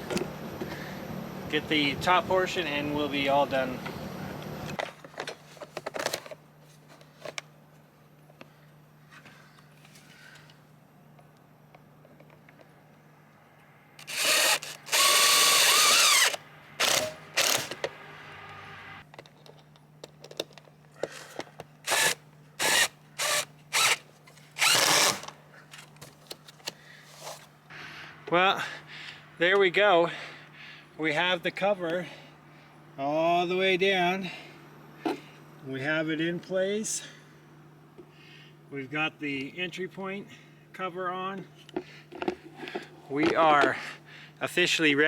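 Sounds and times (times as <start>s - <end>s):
cordless drill driving screws: 14.0s - 17.9s, 21.9s - 24.0s, 24.6s - 25.3s.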